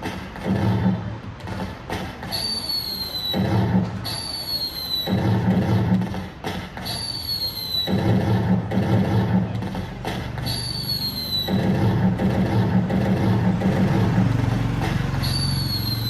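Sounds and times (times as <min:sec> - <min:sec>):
falling firework whistle: 0:02.3 - 0:05.5, 0:06.8 - 0:08.2, 0:10.5 - 0:11.7, 0:15.2 - 0:16.0.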